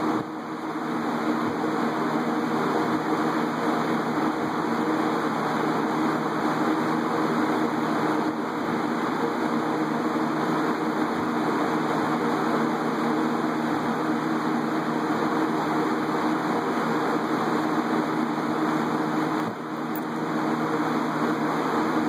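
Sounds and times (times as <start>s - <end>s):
fan air rushing: 0.0s - 22.0s
fan motor hum: 0.0s - 22.0s.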